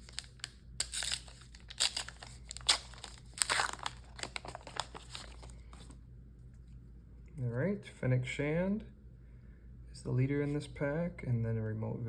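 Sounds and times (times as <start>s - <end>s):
wrapper being torn and crinkled: 0.0s - 5.9s.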